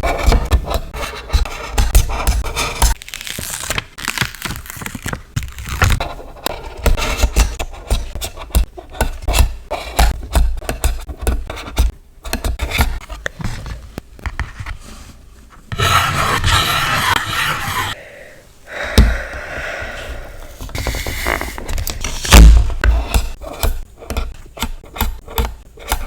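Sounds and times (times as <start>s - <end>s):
sticker paper rubbing and scraping: 0.0s - 3.0s, 14.4s - 18.0s, 20.6s - 26.0s
continuous rasp: 15.7s - 18.0s, 20.0s - 26.0s.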